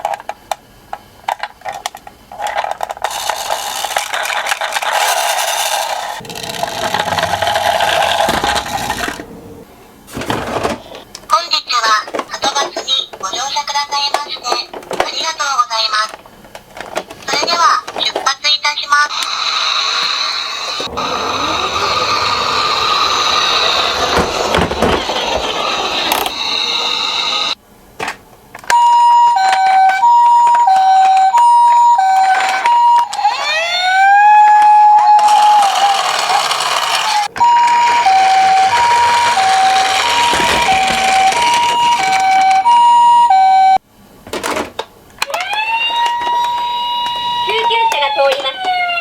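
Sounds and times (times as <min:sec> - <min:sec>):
rough noisy sound: 0:03.0 - 0:10.8, 0:19.3 - 0:27.6, 0:35.2 - 0:42.6
rising siren wail: 0:20.8 - 0:27.6, 0:29.4 - 0:43.8, 0:45.3 - 0:49.0
toy ambulance two-tone siren: 0:28.7 - 0:43.8, 0:45.2 - 0:49.0.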